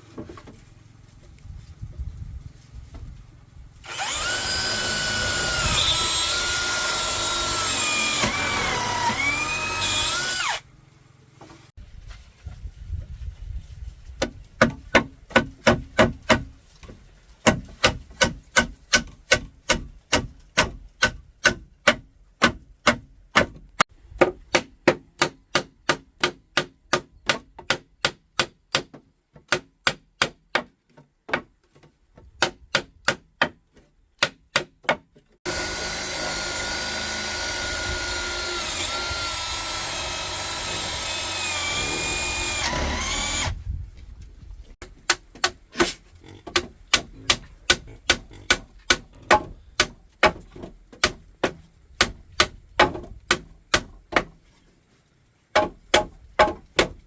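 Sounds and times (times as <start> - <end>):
power tool motor running: 3.8 - 10.6, 35.4 - 43.5.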